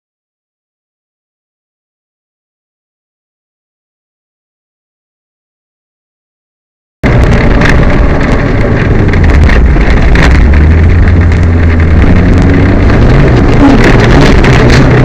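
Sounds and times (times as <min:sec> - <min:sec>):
clattering and rattling: 0:07.0 - 0:15.0
rally car engine running hard: 0:07.0 - 0:15.0
road noise: 0:07.0 - 0:15.0.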